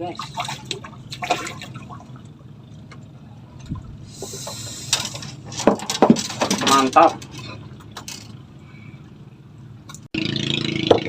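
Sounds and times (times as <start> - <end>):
water splashing and trickling: 0.0 - 10.1
steady rushing hiss: 4.0 - 5.6.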